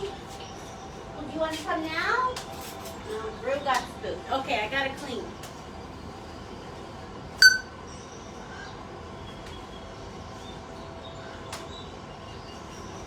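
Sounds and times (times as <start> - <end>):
steady background noise: 0.0 - 13.0
parrot call: 7.4 - 7.7.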